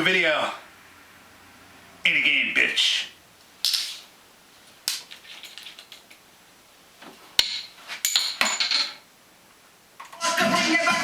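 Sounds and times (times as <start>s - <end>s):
sharp clicks and clattering: 4.9s - 6.2s.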